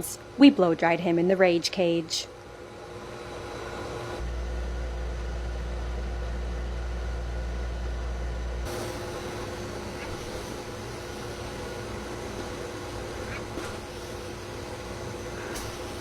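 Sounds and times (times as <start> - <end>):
blow dryer running: 2.4 - 16.0.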